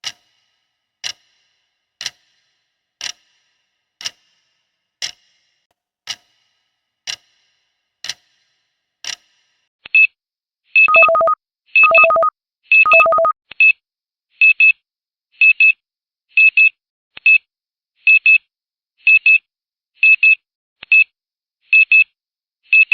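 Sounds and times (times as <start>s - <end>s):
lower pulsing beep: 10.9s - 12.3s, 12.9s - 13.3s
quick high timer beeps: 10.9s - 12.3s, 12.9s - 13.3s.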